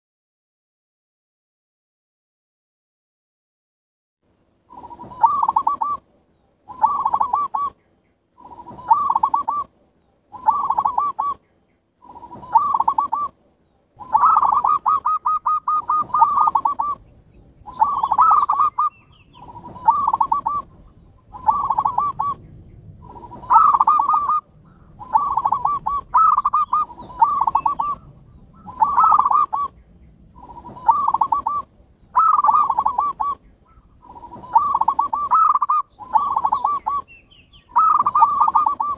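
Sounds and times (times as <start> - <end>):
doves cooing: 4.7 - 38.9.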